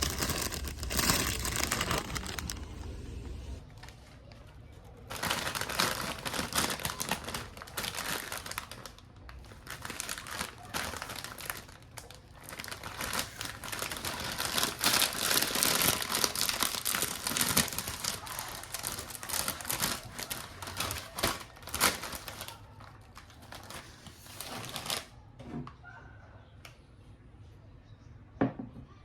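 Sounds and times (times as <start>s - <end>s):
plastic packaging crinkling: 0.0s - 25.2s.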